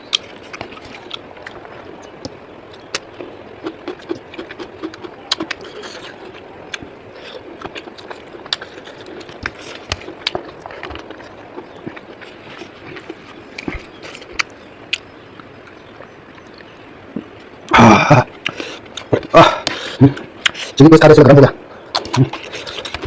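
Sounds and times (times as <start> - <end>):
chewing clicks and smacks: 0.0 - 6.9, 7.6 - 16.7, 21.9 - 23.0
background hiss: 0.0 - 23.0.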